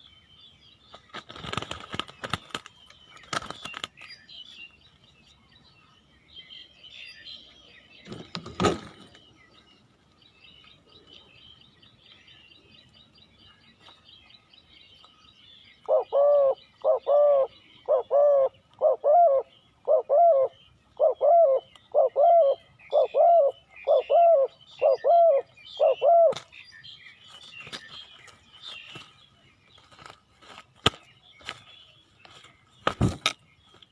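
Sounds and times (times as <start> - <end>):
small birds chirping: 0.0 - 33.9
dove cooing: 15.9 - 26.4.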